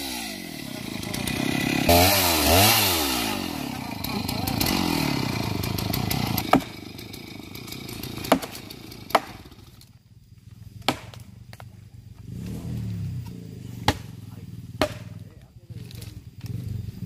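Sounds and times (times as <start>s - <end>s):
chainsaw idling: 0.0s - 10.8s
sharp knocks: 14.8s - 15.1s.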